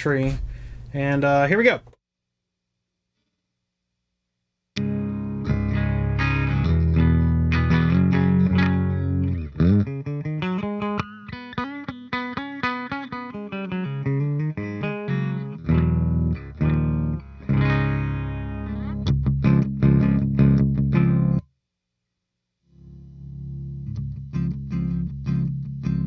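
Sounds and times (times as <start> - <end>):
distorted electric guitar: 4.8 - 21.4.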